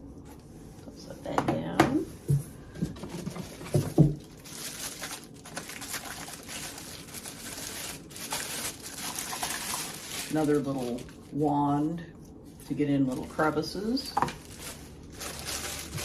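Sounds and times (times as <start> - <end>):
packaging crinkling and rustling: 2.9 - 11.4, 12.6 - 16.0.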